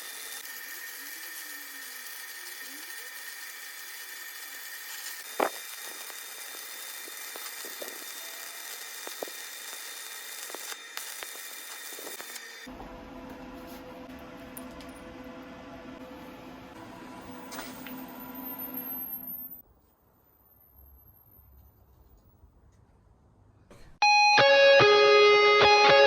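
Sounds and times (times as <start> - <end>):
welding arc crackling hiss: 0.0 - 12.7
welding pops: 0.0 - 12.7.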